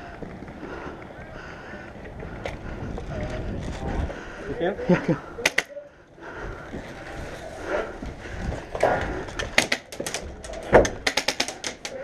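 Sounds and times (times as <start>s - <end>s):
sharp clicks and knocks: 8.7s - 12.0s.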